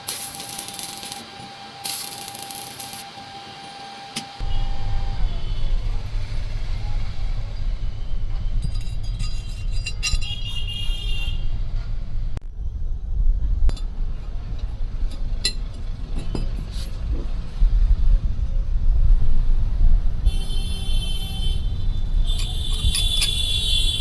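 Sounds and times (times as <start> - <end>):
metal parts clinking: 0.0 - 3.0, 8.6 - 11.0, 22.3 - 24.0
steady low rumble: 4.4 - 24.0.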